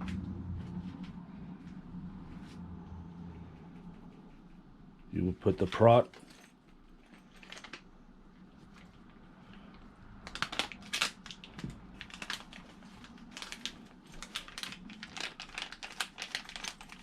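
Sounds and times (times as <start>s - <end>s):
crinkling rustles: 5.5s - 17.0s.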